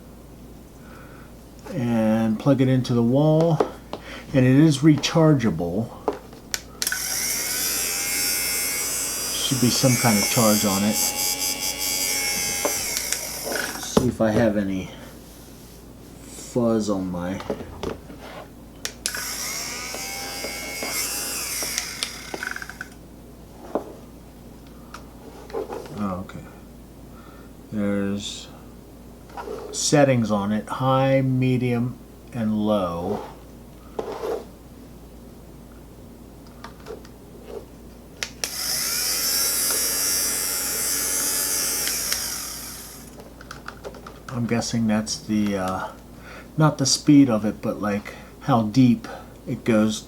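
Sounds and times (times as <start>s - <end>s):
lint remover motor whirring: 6.8s - 14.2s, 19.0s - 23.0s, 38.4s - 43.2s.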